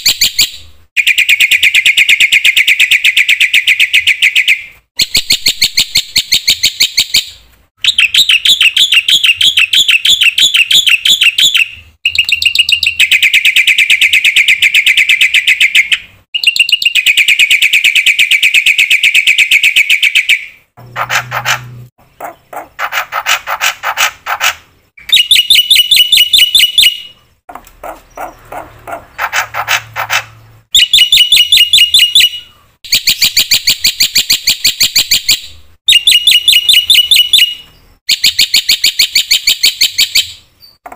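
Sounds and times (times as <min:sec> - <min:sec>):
bird high trilling: 0:00.0 - 0:40.8
bird chattering calls: 0:20.0 - 0:40.1.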